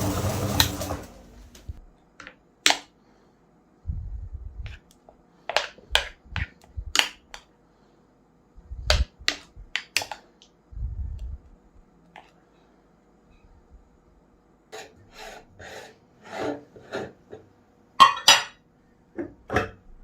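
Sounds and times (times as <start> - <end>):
dull low thumps: 3.8 - 4.8, 6.1 - 7.0, 8.6 - 9.7, 10.7 - 11.8.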